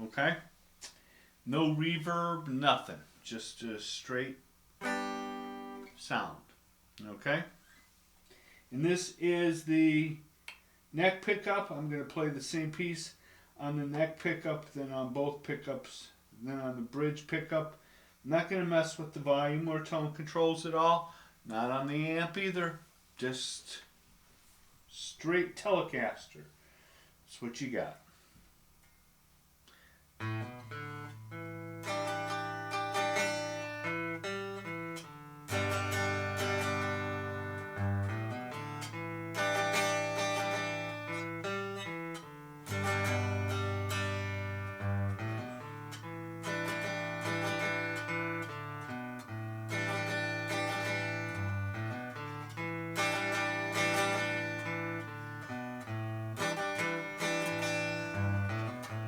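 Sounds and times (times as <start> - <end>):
electric guitar playing bass notes and chords: 30.2 - 59.0.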